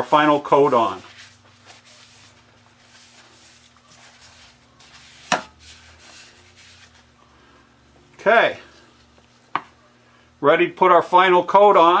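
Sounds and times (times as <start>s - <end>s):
low steady hum: 0.0s - 11.9s
handling noises on workbench: 0.7s - 7.1s.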